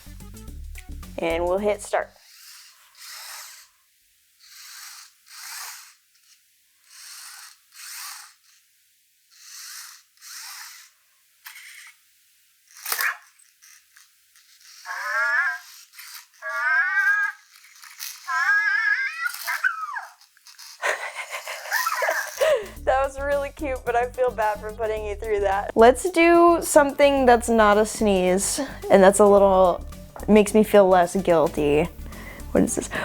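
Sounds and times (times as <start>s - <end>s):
breathy hisses from small speaker: 4.4s - 6.0s, 9.3s - 11.0s, 20.5s - 22.8s, 31.9s - 33.0s.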